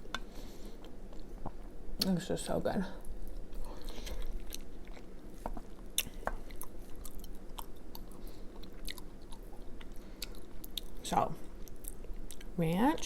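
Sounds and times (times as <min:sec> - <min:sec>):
close-miked chewing: 0:03.0 - 0:12.6.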